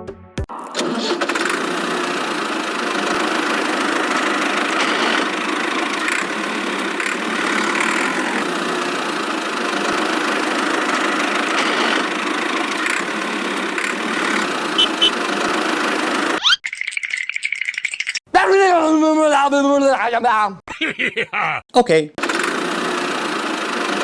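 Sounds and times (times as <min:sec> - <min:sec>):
small engine running: 0:00.8 - 0:15.2, 0:22.2 - 0:24.0.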